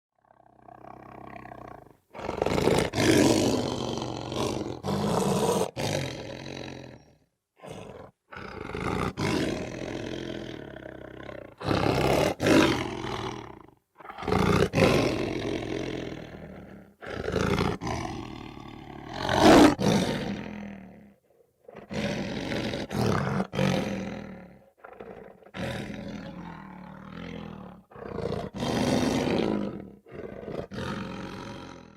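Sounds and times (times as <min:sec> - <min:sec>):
lion roaring: 0:00.2 - 0:31.9.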